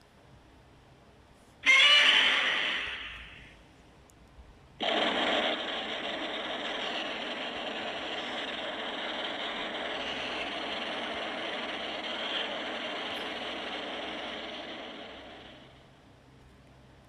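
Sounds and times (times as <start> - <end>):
steady noisy monster sound: 1.6 - 3.6, 4.8 - 16.0.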